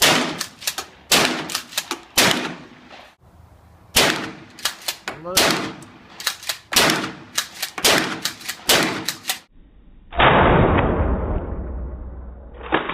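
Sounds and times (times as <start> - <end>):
rapid gunfire with echo: 5.3 - 5.8, 6.7 - 9.3.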